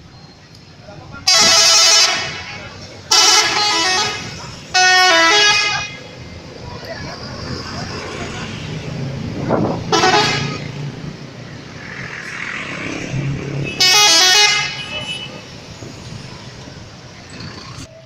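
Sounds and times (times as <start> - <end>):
road traffic: 0.0 - 18.0
multi-tone bus air horn melody: 1.2 - 6.2, 9.9 - 10.6, 13.7 - 15.5.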